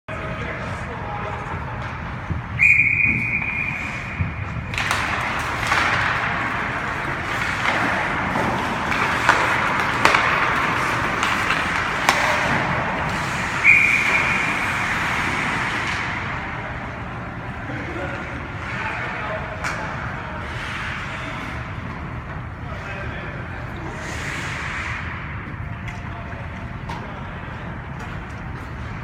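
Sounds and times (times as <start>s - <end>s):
noisy rink background: 0.1s - 29.0s
referee whistle blast: 2.6s - 4.2s, 13.6s - 14.5s.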